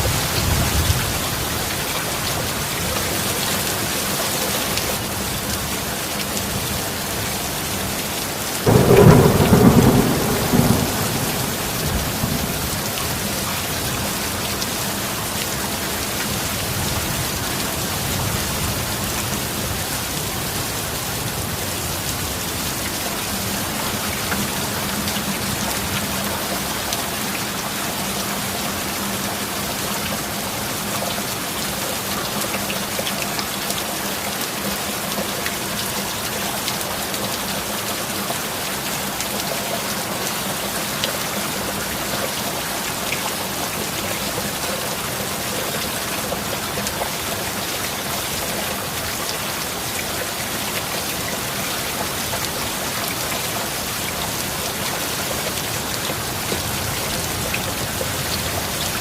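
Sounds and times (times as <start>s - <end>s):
heavy rain falling: 0.0s - 59.0s
thunderclap rumbling: 8.7s - 14.1s.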